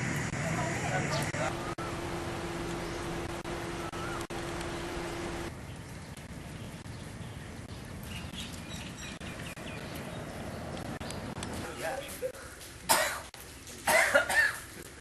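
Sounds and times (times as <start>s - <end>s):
low hum: 0.0s - 6.9s
small birds chirping: 1.0s - 12.7s.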